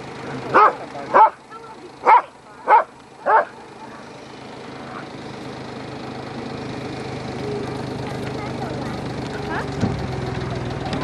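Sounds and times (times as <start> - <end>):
tractor engine running: 0.0 - 11.0
dog barking: 0.5 - 1.4, 2.0 - 3.6.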